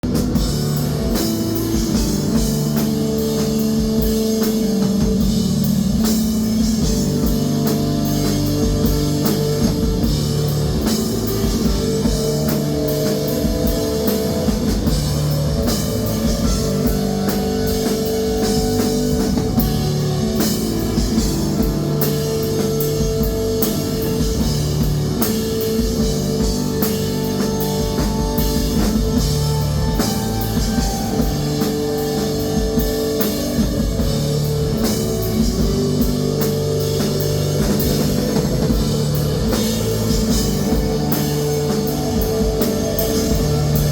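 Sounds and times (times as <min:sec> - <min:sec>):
rock band playing: 0:00.0 - 0:43.9.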